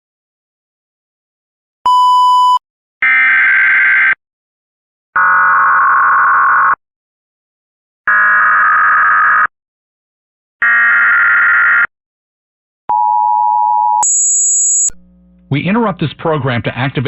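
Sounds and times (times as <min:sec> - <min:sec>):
harsh buzzing data tones: 0:14.0 - 0:15.5.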